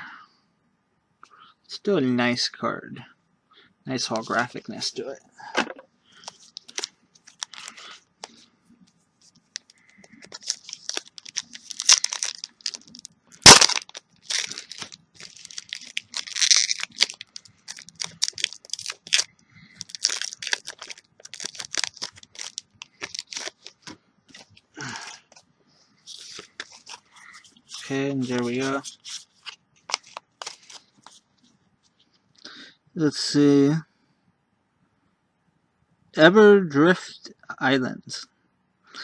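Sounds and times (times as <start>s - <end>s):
wrapper crinkling and tearing: 6.2s - 8.4s, 9.6s - 25.4s, 26.1s - 31.2s
sharp crack: 13.4s - 14.8s.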